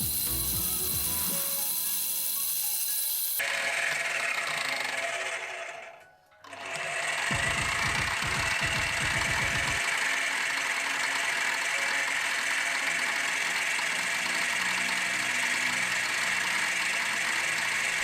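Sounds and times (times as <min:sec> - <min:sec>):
machine tool high whine: 0:00.0 - 0:18.0
fast low pulsing: 0:07.3 - 0:09.8.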